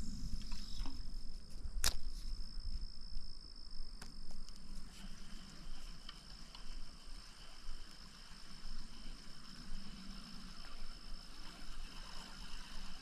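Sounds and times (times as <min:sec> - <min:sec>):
faint ticks: 0:00.0 - 0:13.0
insects singing high drone: 0:00.0 - 0:13.0
lower steady insect note: 0:00.0 - 0:13.0
sharp click: 0:01.8 - 0:02.2.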